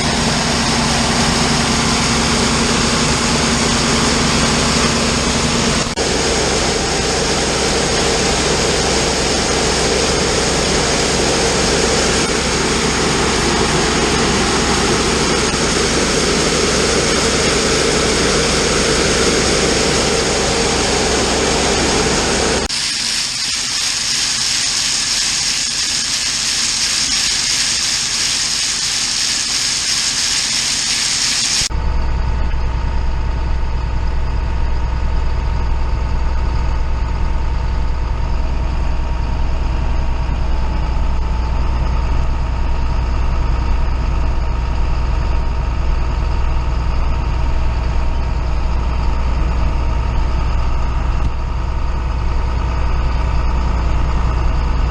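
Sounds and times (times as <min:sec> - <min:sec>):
machinery high hiss: 0:00.0 - 0:31.7
diesel engine drone: 0:00.0 - 0:54.9.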